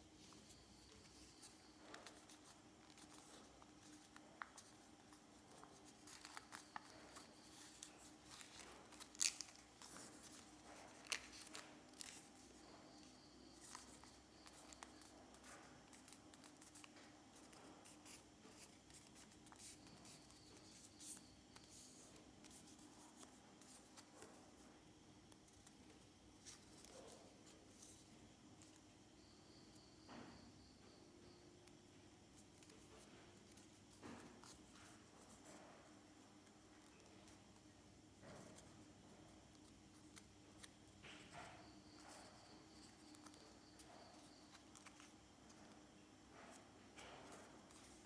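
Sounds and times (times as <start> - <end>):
paper folding and creasing: 0.2 - 24.6, 39.5 - 45.8.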